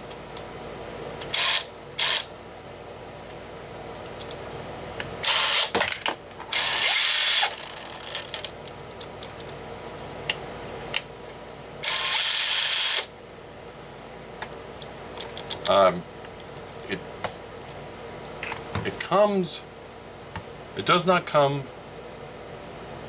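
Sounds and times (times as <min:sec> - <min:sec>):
rasping ratchet-like grinder noise: 0:01.2 - 0:02.3, 0:05.2 - 0:05.8, 0:06.5 - 0:08.5, 0:11.8 - 0:13.1.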